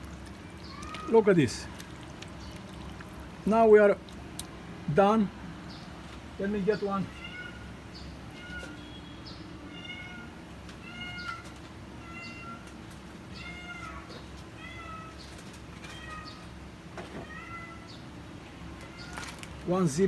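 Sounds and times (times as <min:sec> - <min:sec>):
cat meowing: 0:00.6 - 0:01.2, 0:07.1 - 0:08.9, 0:09.7 - 0:12.7, 0:13.3 - 0:15.2, 0:15.8 - 0:16.5, 0:17.1 - 0:18.0, 0:18.8 - 0:19.4.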